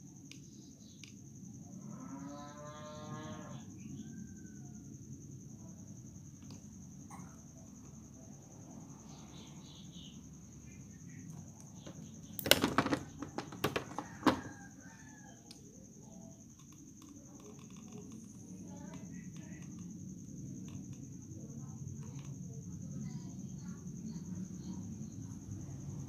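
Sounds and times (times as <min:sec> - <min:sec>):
tools clicking and knocking: 0:11.8 - 0:14.6.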